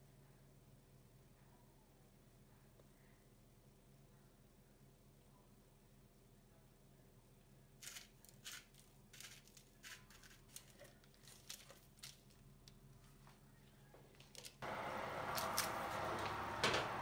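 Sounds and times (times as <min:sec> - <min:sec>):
sharp food handling noises: 0:07.8 - 0:12.8, 0:14.2 - 0:16.4.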